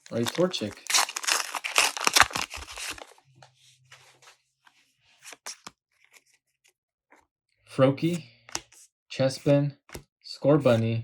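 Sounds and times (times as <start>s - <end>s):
cards rustling and clicking: 0.0s - 3.1s, 5.2s - 7.2s, 8.1s - 10.0s
foil wrapper tearing: 0.0s - 3.1s.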